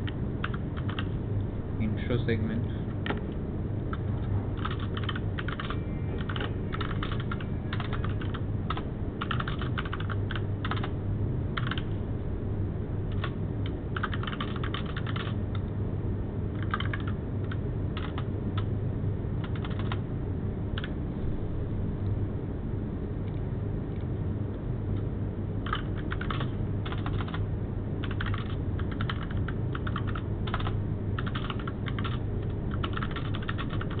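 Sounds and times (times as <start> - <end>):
typing on computer keyboard: 0.0 - 1.1, 4.6 - 10.9, 11.6 - 11.9, 13.1 - 15.6, 16.6 - 18.7, 19.4 - 20.0, 25.6 - 27.4, 28.0 - 34.0
steady low hum: 0.0 - 34.0.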